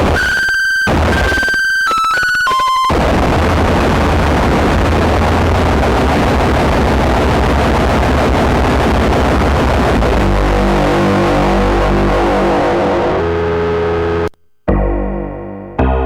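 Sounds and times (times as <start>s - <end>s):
distorted noise music: 0.0s - 16.0s
pitched distorted tones: 0.0s - 16.0s
heavy low drone: 9.6s - 16.0s.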